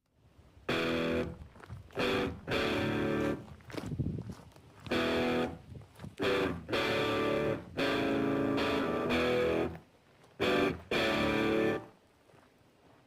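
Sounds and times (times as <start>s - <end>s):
electric guitar chords: 0.7s - 1.4s, 2.0s - 3.4s, 4.9s - 5.6s, 6.2s - 9.8s, 10.4s - 11.9s.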